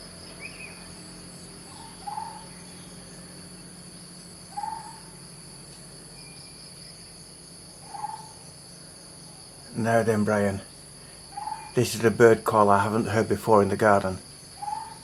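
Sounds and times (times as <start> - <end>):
bird calling: 0.0 - 3.7, 4.5 - 5.2, 7.7 - 8.5, 11.0 - 12.0, 14.4 - 15.0
insects chorus: 0.0 - 15.0.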